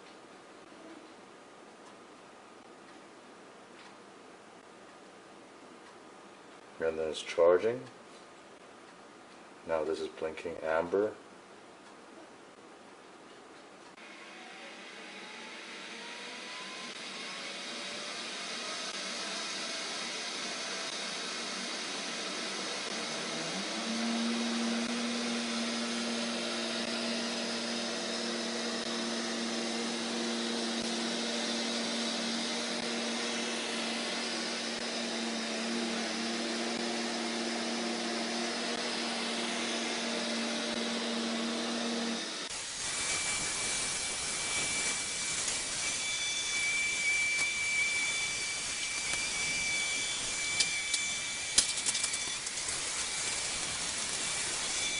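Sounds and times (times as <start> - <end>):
high steady whine: 13.9 - 54.9
robot vacuum motor humming: 14.1 - 54.9.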